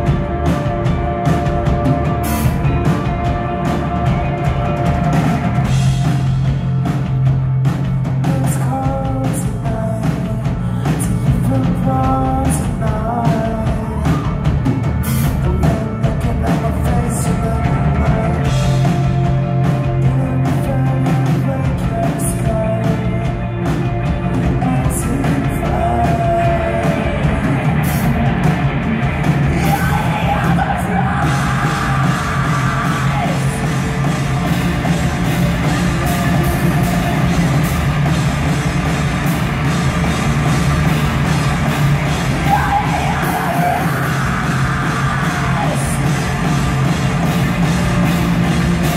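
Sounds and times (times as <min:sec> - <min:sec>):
drum kit: 0:00.0 - 0:48.9
heavy rock band playing: 0:00.0 - 0:48.9
person singing and shouting: 0:29.2 - 0:34.2, 0:42.0 - 0:46.5.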